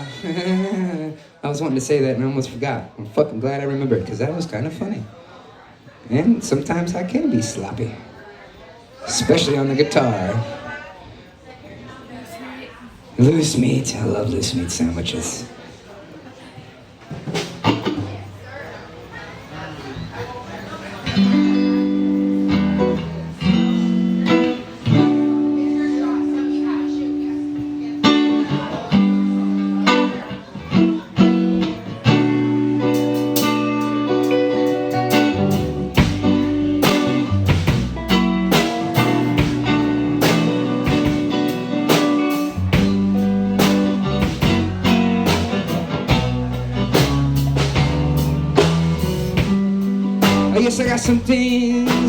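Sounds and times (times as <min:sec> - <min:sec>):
drums with steady beat: 0:16.9 - 0:18.4, 0:27.5 - 0:52.0
guitar chords strummed: 0:21.0 - 0:52.0.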